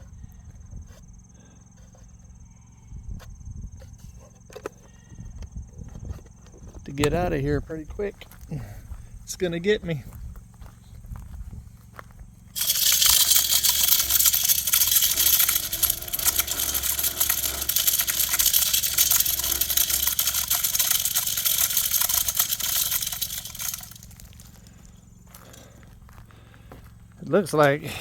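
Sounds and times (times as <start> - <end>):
feeder motor flinging pellets: 12.6 - 25.8.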